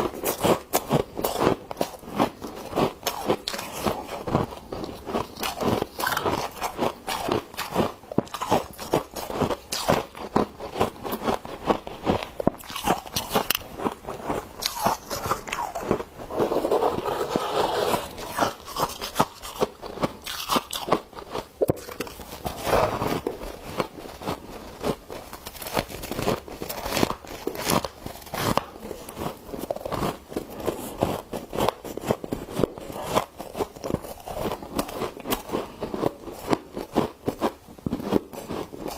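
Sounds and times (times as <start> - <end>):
frost crunching: 0.2 - 37.0
scraping on frost: 16.3 - 19.0.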